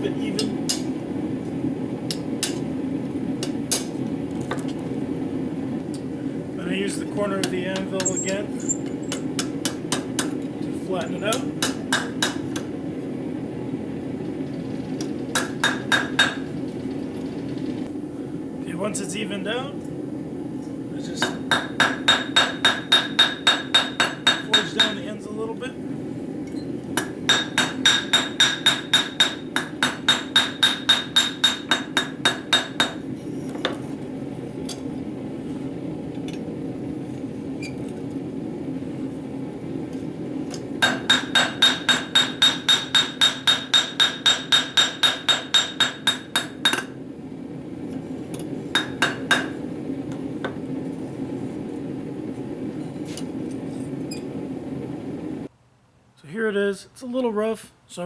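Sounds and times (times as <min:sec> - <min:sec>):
steady low hum: 0:00.0 - 0:58.0
hammer ringing on steel anvil: 0:21.2 - 0:25.0, 0:27.0 - 0:33.0, 0:40.8 - 0:46.9.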